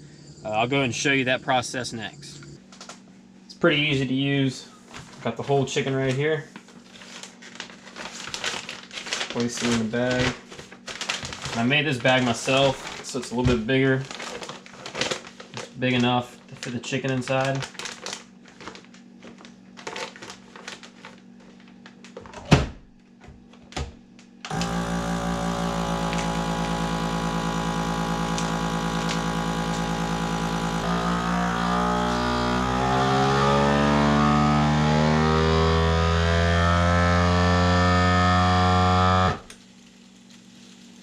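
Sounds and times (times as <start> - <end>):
vacuum sealer pump humming: 3.5 - 22.1, 23.2 - 39.6
plastic bag crinkling: 4.9 - 22.3.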